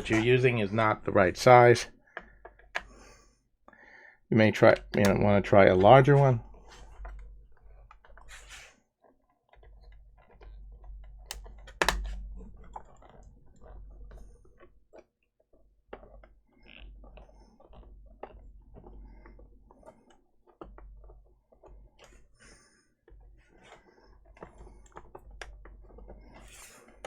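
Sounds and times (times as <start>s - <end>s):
screwdriver clicks and taps: 4.9s - 5.2s, 11.3s - 12.3s.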